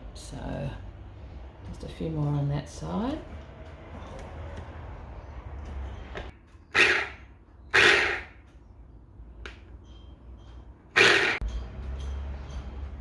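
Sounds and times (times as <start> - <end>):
mini chopper motor whirring: 11.0 - 11.4.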